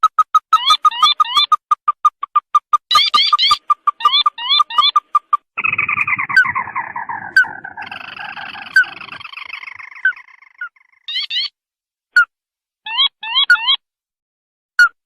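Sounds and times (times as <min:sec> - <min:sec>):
descending bird trill: 0:02.9 - 0:11.5
short bird notes: 0:05.6 - 0:11.5.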